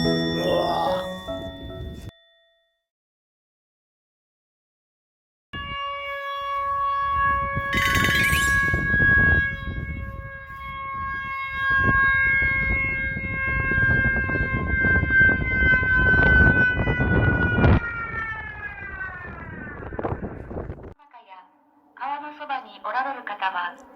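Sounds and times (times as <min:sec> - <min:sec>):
warning siren wailing: 0:00.0 - 0:02.1, 0:05.6 - 0:22.0.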